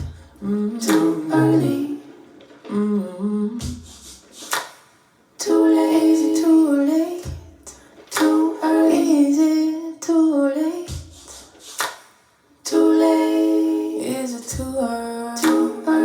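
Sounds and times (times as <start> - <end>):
woman singing and humming: 0.0 - 3.8, 12.7 - 16.0.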